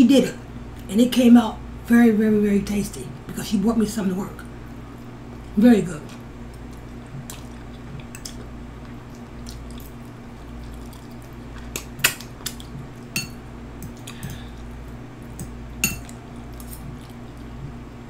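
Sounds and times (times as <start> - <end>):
cutlery clinking on a plate: 15.8 - 16.8.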